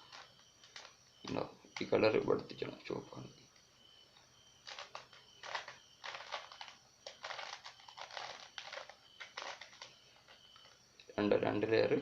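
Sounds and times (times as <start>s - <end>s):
plastic cube twisting clicks: 0.0s - 1.4s, 4.6s - 9.9s.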